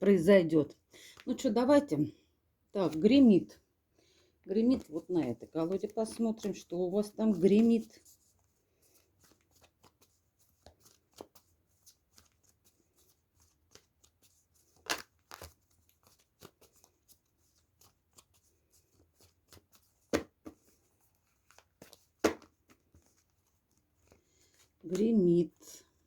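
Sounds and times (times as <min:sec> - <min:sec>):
cards being shuffled: 0:04.6 - 0:25.2
sharp slaps of cards: 0:20.1 - 0:20.6, 0:22.2 - 0:22.5.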